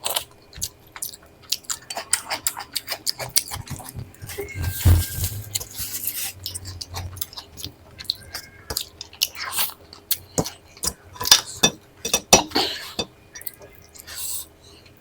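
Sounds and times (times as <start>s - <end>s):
person chewing crunchy food: 0.0s - 11.6s.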